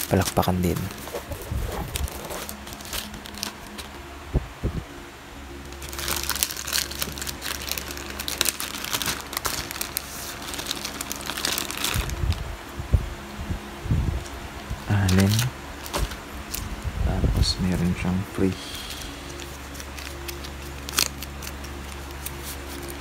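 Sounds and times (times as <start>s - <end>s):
packaging crinkling and rustling: 0.0s - 4.0s, 5.6s - 12.4s, 14.9s - 16.8s, 18.9s - 23.0s.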